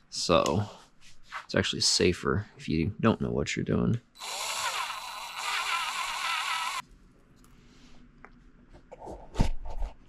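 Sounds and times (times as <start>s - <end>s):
drill turning a tap: 4.2s - 6.8s.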